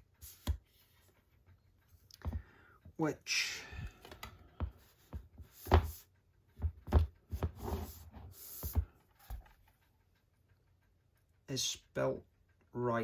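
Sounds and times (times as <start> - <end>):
metal case taps and knocks: 6.6 - 7.5.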